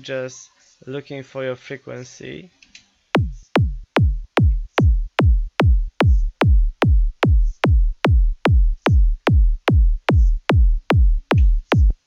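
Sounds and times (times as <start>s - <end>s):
electronic kick drum loop: 3.2s - 12.0s.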